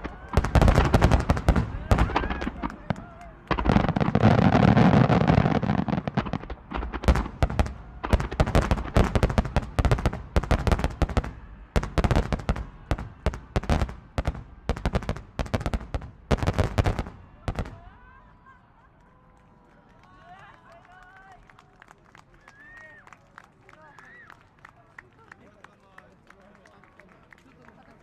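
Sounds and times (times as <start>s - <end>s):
fireworks bangs and crackling: 0.0s - 18.1s.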